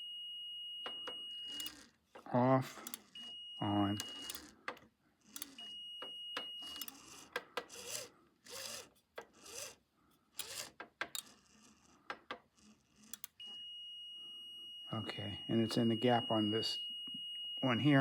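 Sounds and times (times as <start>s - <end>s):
continuity tester high tone: 0.0s - 4.5s, 13.2s - 18.0s
sharp mechanical clicks: 1.5s - 1.8s, 2.8s - 3.1s, 4.0s - 5.7s, 6.6s - 9.8s, 10.4s - 13.4s.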